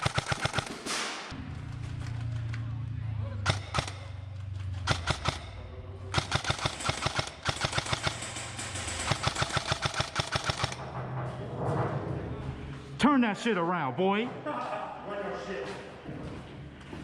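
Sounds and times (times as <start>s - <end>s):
airsoft guns firing: 0.0s - 1.4s, 3.4s - 8.4s, 9.1s - 10.8s.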